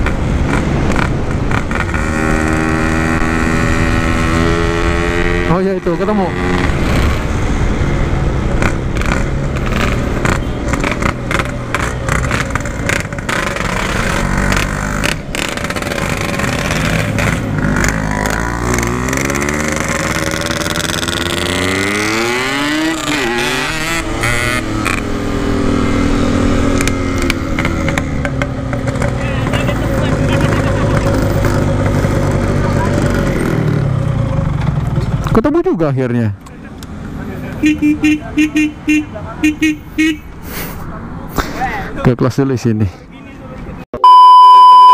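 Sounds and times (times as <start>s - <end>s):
two-stroke motorcycle engine revving: 0.0s - 35.5s
road and wind noise: 0.0s - 44.9s.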